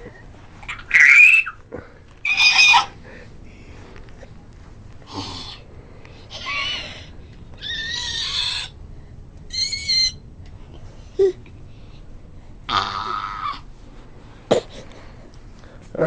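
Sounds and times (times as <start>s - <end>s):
baby squealing: 0.7s - 1.6s, 2.2s - 3.0s, 6.3s - 8.7s, 9.5s - 10.2s.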